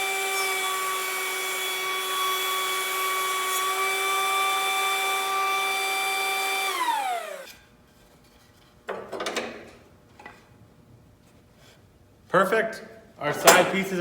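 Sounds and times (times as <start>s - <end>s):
planer whining and spinning down: 0.0s - 7.5s
wooden knock and rattle: 8.8s - 10.4s.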